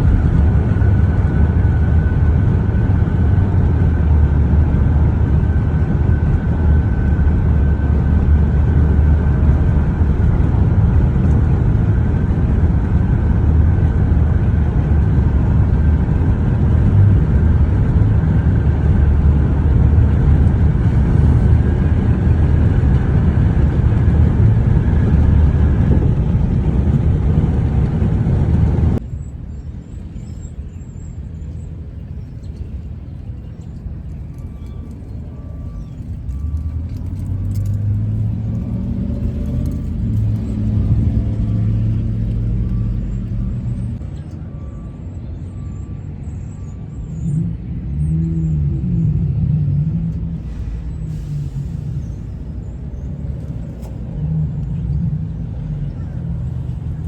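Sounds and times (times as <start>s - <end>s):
faint steady whine: 0.0s - 47.1s
vehicle rumbling on road: 0.0s - 57.0s
faint high chirping: 29.0s - 37.0s.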